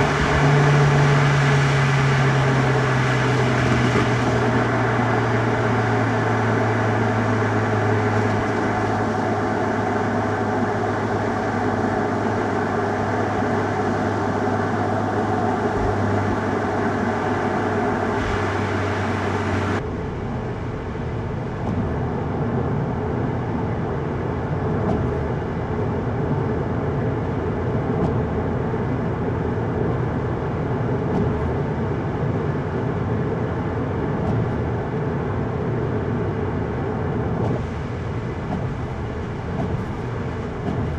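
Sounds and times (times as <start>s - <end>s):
tyre and road rumble: 0.0s - 22.9s, 32.8s - 40.9s
low engine drone: 0.0s - 40.9s.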